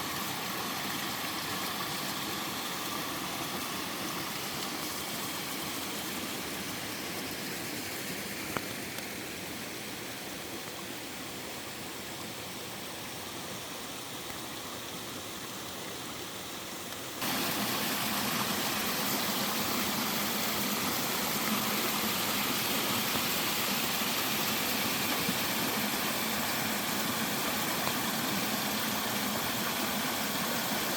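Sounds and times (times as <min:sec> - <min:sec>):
stream and waterfall rushing: 0:00.0 - 0:30.9.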